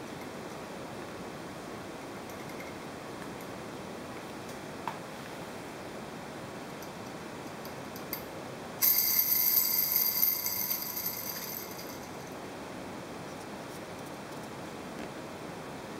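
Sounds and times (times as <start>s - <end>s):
bearing jangling metallic ring: 8.8s - 12.4s.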